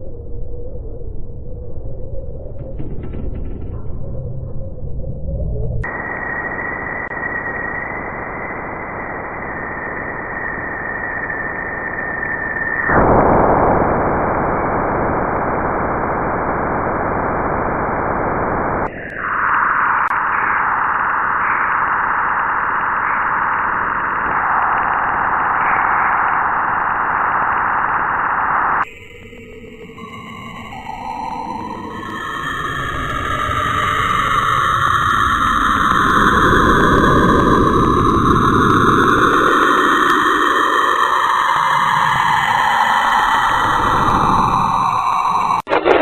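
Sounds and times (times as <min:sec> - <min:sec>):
steady high whistle: 0:05.8 - 0:15.5, 0:18.9 - 0:46.0
static-like hiss: 0:13.6 - 0:28.8.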